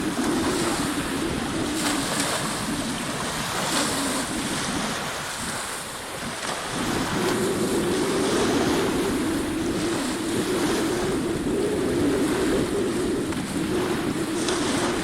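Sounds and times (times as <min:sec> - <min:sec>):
sea waves washing: 0:00.0 - 0:15.0
wind buffeting microphone: 0:00.0 - 0:15.0.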